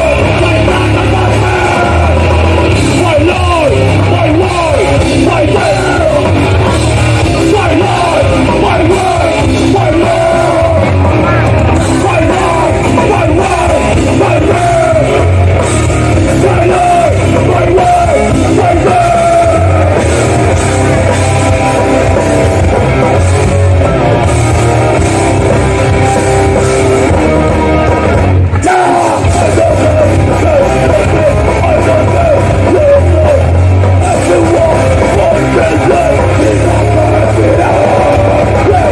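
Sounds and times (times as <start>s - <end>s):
shouted vocals: 0.0s - 15.5s, 16.1s - 20.6s, 28.5s - 38.9s
distorted guitars: 0.0s - 38.9s
drums: 0.0s - 38.9s.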